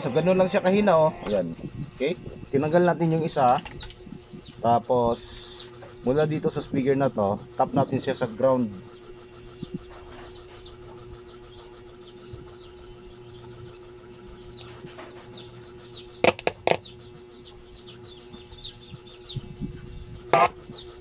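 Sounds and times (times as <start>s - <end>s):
steady low hum: 0.0s - 21.0s
speaker crackling clicks: 3.4s - 4.7s.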